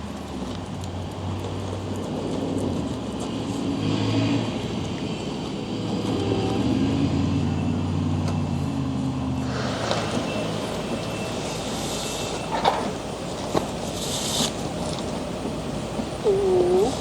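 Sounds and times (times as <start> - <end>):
vehicle engine running: 0.7 - 17.0.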